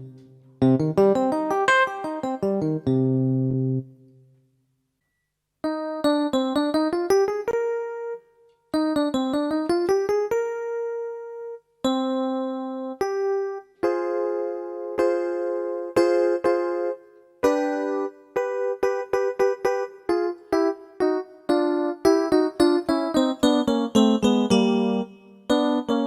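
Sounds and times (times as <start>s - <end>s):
electric piano: 0.0s - 4.1s, 5.6s - 26.0s.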